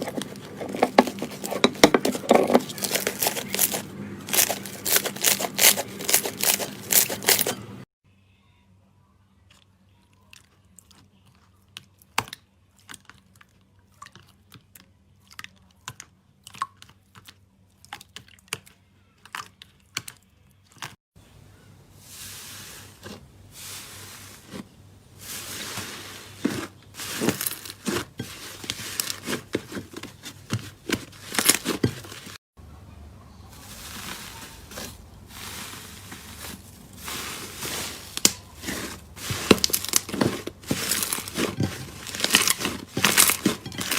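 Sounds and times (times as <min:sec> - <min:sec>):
crunchy slime crackling: 0:00.0 - 0:07.6, 0:33.5 - 0:43.9.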